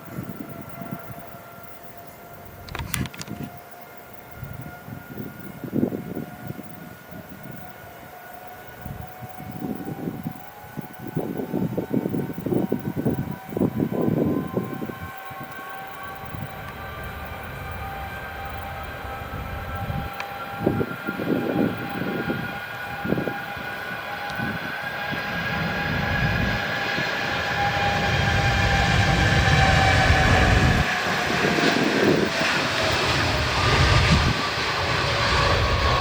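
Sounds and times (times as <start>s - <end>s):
jet engines whining: 0.0s - 36.0s
gusts of low rumbling noise: 11.0s - 36.0s.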